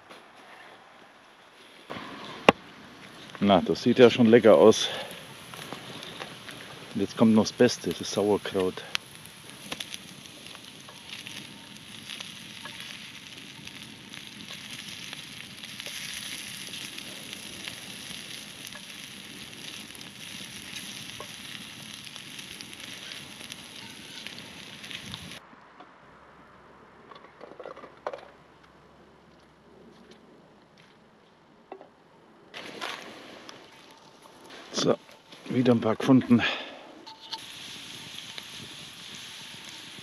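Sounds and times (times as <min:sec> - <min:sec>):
food sizzling in a pan: 0:04.4 - 0:25.4, 0:37.1 - 0:40.0
stirring in a pan: 0:07.8 - 0:25.4.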